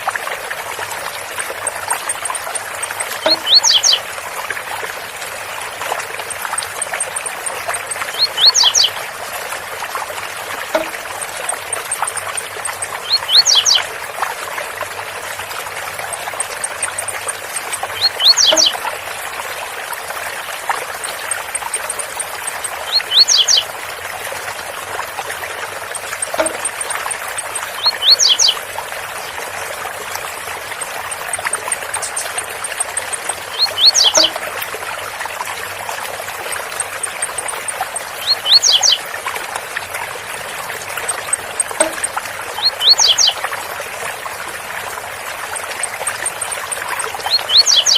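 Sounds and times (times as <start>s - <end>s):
small bird singing: 1.4s - 4.1s, 6.2s - 9.0s, 10.7s - 14.0s, 15.9s - 18.9s, 21.0s - 23.7s, 25.8s - 28.6s, 30.6s - 34.6s, 36.4s - 39.0s, 41.0s - 43.4s, 45.8s - 47.9s.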